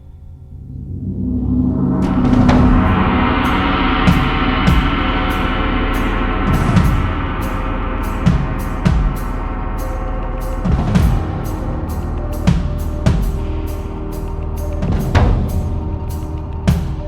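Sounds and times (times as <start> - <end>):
dense ringing electronic wash: 0.0 - 17.0
hissy high percussion strokes: 1.7 - 17.0.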